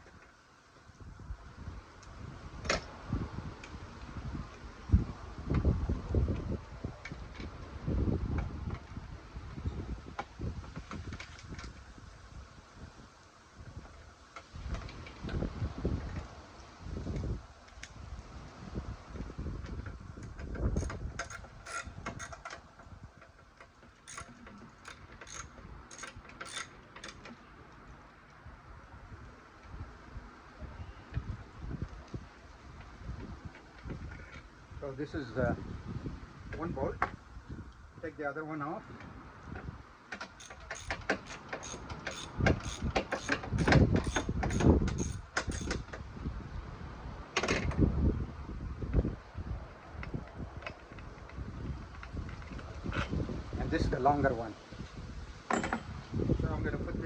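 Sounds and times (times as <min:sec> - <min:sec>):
socket ratchet wrench clicking: 0:20.8 - 0:22.5, 0:24.1 - 0:27.2, 0:40.3 - 0:45.8.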